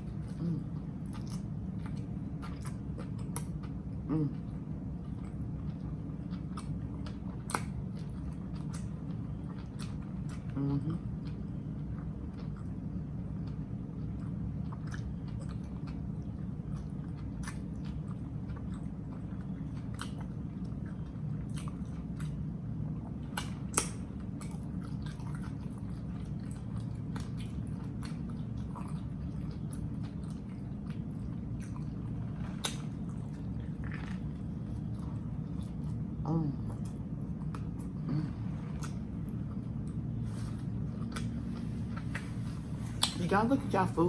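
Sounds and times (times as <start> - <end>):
person chewing sandwich: 0.0 - 43.2
steady low hum: 0.0 - 44.0
lip smacks: 23.3 - 31.0, 32.5 - 34.6, 38.8 - 39.1, 40.6 - 43.3.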